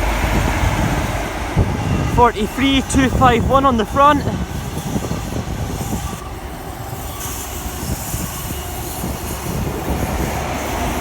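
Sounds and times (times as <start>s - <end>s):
train wheels rumbling on rail: 0.0s - 11.0s.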